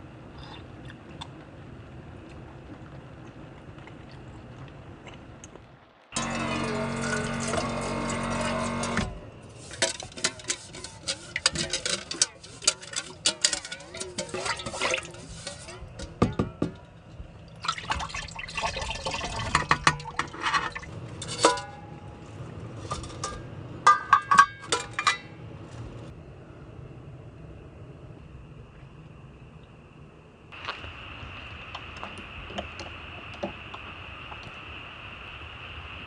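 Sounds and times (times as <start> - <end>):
water pouring and splashing: 9.4 - 16.2, 17.4 - 21.6
clinks and knocks of handling: 9.6 - 17.1, 19.5 - 22.0, 22.8 - 25.3.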